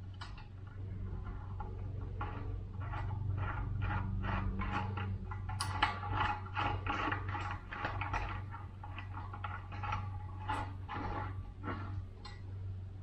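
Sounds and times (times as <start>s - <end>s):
steady low hum: 0.0s - 13.0s
metal tool clicks and scrapes: 4.6s - 11.3s.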